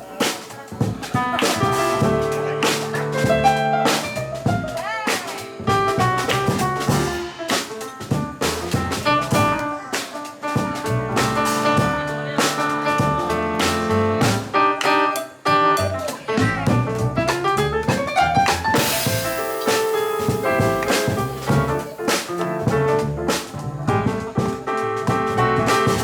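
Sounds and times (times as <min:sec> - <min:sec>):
jazz trio playing: 0:00.0 - 0:26.0
cymbal crash: 0:18.8 - 0:22.4.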